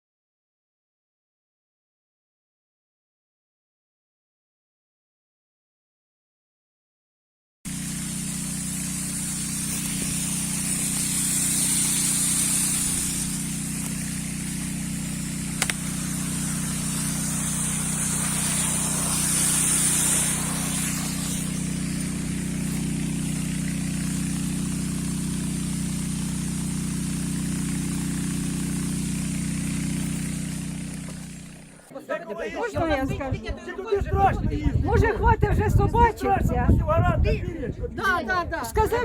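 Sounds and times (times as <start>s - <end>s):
hiss: 7.7s - 31.9s
low machine hum: 7.7s - 31.9s
sharp click: 15.6s - 15.9s.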